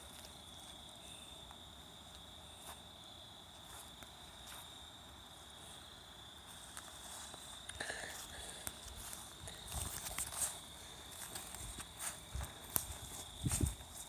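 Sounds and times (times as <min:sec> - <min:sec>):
crickets trilling: 0:00.0 - 0:14.0.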